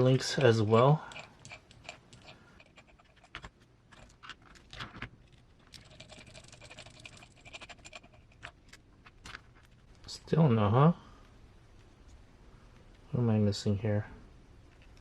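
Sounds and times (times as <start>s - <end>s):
hand tools clicking and scraping: 0.0s - 4.4s.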